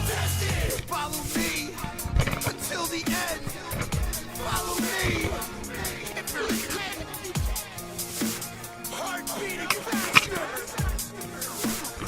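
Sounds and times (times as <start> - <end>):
electronic music with drum beat: 0.0 - 12.0
pitch-bending vocal phrases: 0.0 - 12.0.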